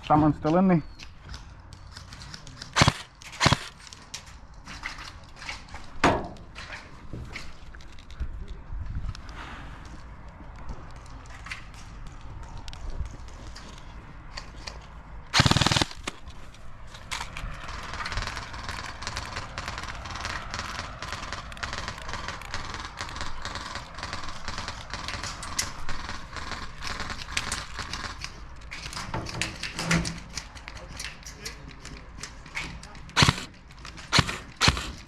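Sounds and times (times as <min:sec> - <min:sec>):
airsoft gun burst: 0:02.8 - 0:03.8, 0:15.4 - 0:16.2, 0:33.2 - 0:33.5, 0:34.1 - 0:35.0
small scattered clicks: 0:10.2 - 0:35.0.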